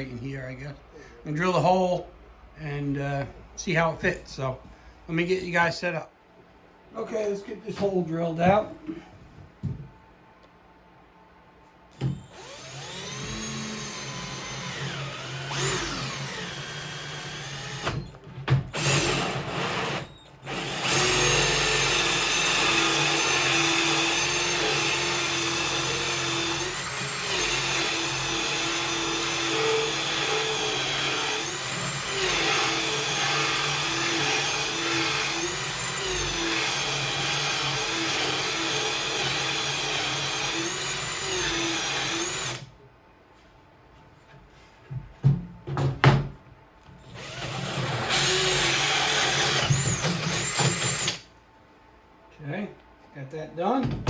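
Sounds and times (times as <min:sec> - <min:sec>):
electric drill cutting with hole saw: 0:12.2 - 0:42.7, 0:47.1 - 0:51.3.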